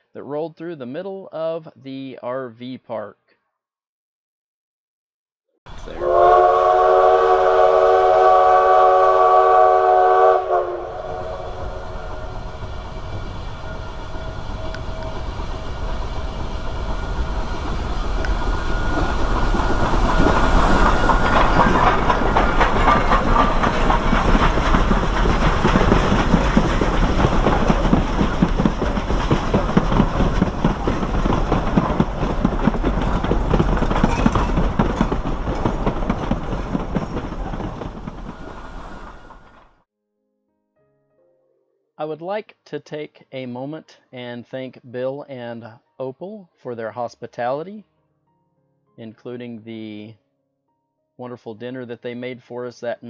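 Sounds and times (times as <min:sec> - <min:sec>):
steam train rolling past: 0:05.7 - 0:39.9
wheels clacking over rail joints: 0:14.5 - 0:39.7.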